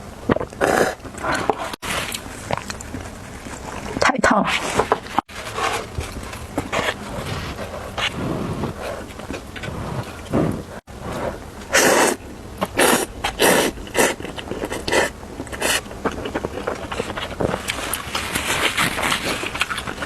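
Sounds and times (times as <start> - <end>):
person slurping noodles: 0.5 - 2.2, 7.1 - 15.8.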